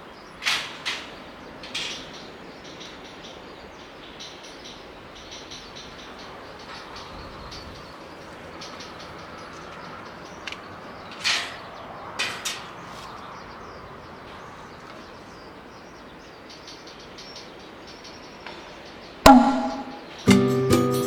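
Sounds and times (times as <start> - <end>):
low steady background noise: 0.0 - 20.3
sharp knocks: 19.3 - 20.4
ringing strike: 19.3 - 20.6
acoustic guitar music: 19.3 - 21.0.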